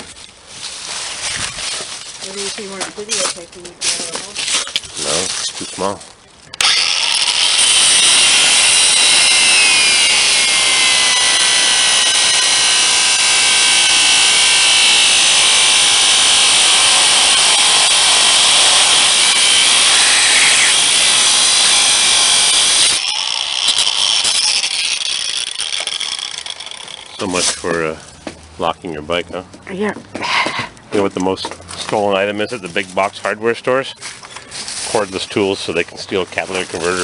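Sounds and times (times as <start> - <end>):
angle grinder cutting steel: 6.6 - 27.8.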